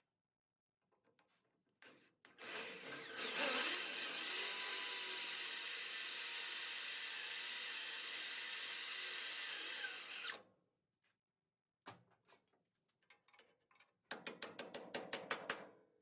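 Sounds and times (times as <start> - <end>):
electric drill drilling steel: 2.4 - 10.4.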